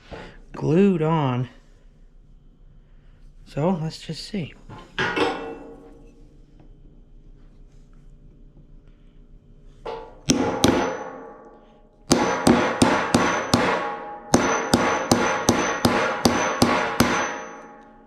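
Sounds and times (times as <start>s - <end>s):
crowbar striking wooden crate: 9.9s - 11.2s, 12.1s - 17.7s.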